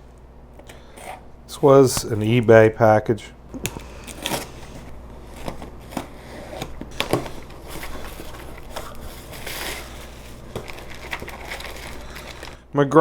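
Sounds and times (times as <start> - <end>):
packing material crinkling: 3.6 - 12.7.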